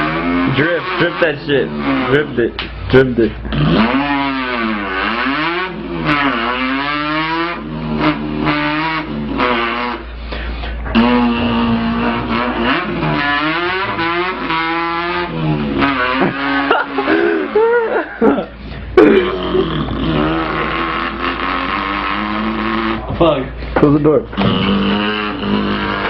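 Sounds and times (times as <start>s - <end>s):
person imitating car engine: 0.0s - 2.6s, 3.2s - 23.4s, 24.3s - 26.0s.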